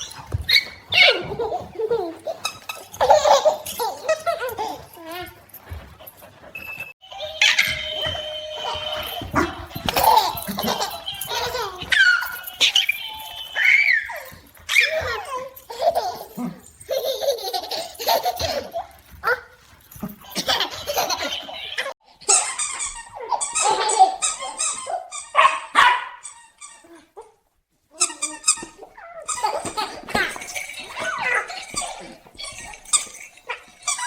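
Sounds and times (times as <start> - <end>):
puppy yipping and whining: 0.0 - 1.8, 2.4 - 15.6, 22.3 - 27.1, 28.0 - 34.0
baby laughing and giggling: 0.0 - 5.9, 8.6 - 19.1, 20.2 - 22.4, 29.1 - 34.0.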